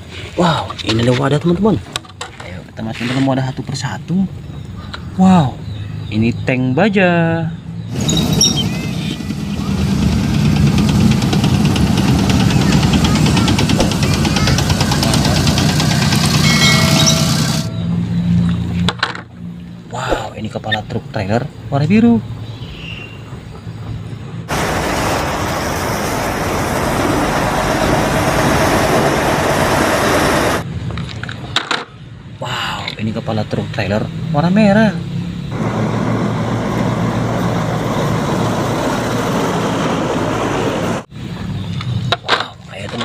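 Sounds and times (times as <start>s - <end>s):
motor vehicle running noise: 4.2s - 32.4s, 33.5s - 43.0s
motor humming: 7.9s - 17.8s.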